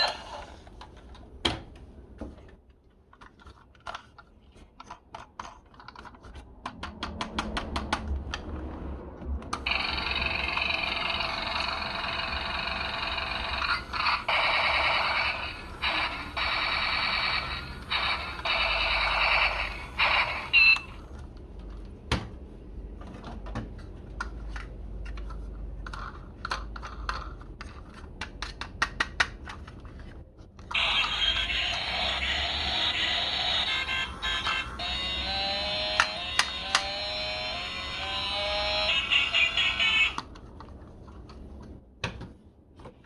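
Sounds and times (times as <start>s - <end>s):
toy electronic siren: 9.6s - 21.0s, 30.7s - 40.3s.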